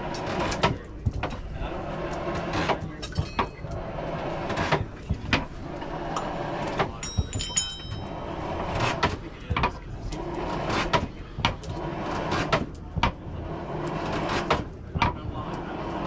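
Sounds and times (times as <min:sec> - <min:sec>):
hammer striking iron on anvil: 0:07.0 - 0:08.3
metallic ring of anvil: 0:07.0 - 0:08.6.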